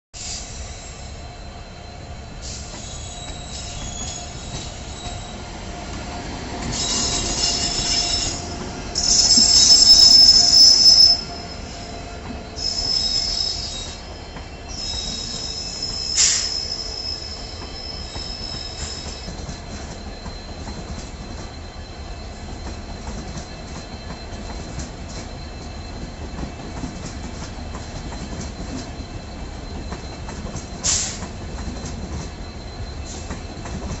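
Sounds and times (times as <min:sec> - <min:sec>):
high-pitched wheel squeal: 0:00.2 - 0:05.5, 0:06.7 - 0:20.8
train rolling rumble: 0:00.2 - 0:34.0.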